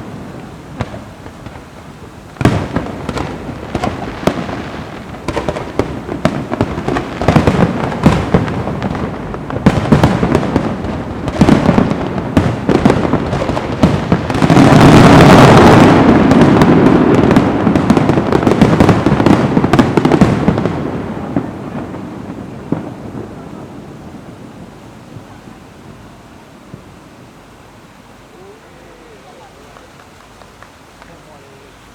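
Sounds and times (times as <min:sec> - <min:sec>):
fireworks crackling: 0:00.0 - 0:31.9.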